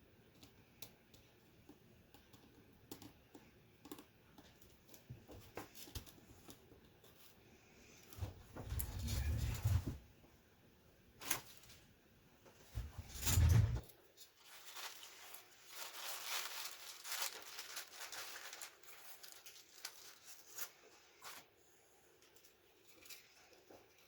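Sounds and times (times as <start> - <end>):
soft rustling and scraping: 4.4 - 10.1, 12.5 - 21.5.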